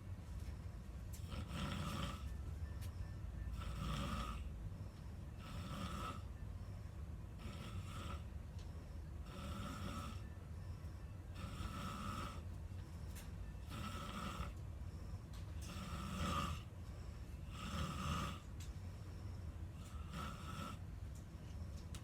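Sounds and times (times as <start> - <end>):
steady low hum: 0.0 - 22.0
person snoring: 3.5 - 4.4, 5.4 - 6.2, 7.4 - 8.2, 9.2 - 10.2, 11.4 - 12.4, 13.6 - 14.6, 17.5 - 18.4, 19.9 - 20.8.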